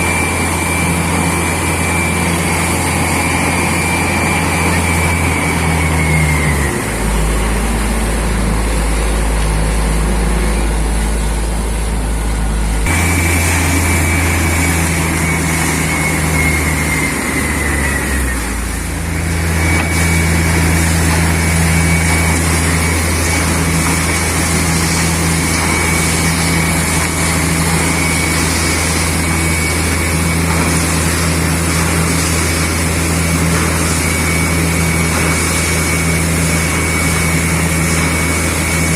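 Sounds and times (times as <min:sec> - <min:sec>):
diesel engines and air compressor: 0:00.0 - 0:38.9
high whine sliding downward: 0:00.0 - 0:38.9.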